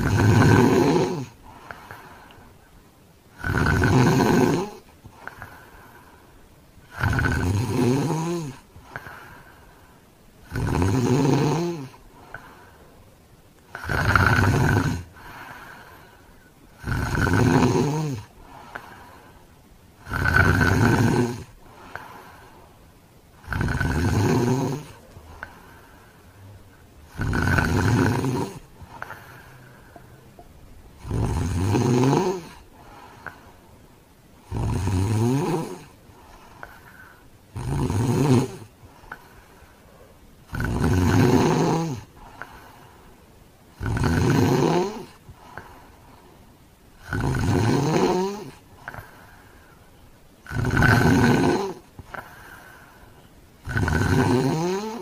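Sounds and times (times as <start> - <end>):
man snoring loudly: 0.0 - 1.4, 3.3 - 5.6, 6.9 - 9.3, 10.4 - 12.0, 13.7 - 15.7, 16.8 - 18.3, 20.0 - 21.5, 23.4 - 25.0, 27.1 - 29.6, 31.0 - 32.6, 34.4 - 35.9, 37.5 - 38.7, 40.5 - 42.1, 43.8 - 45.2, 47.0 - 48.6, 50.4 - 51.8, 53.6 - 55.0
quiet breathing: 0.0 - 11.0, 11.6 - 55.0.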